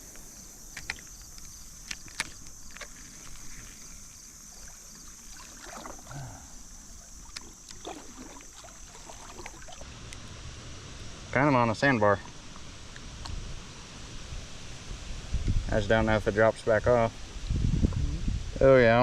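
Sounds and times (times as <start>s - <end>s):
water sloshing around wading legs: 0.7s - 9.9s.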